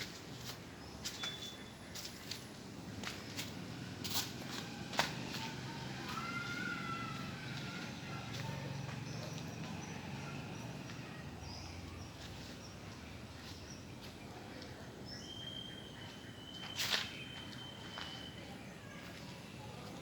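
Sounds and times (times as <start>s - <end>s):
faint bird-like chirps: 1.0s - 2.4s, 15.1s - 19.3s.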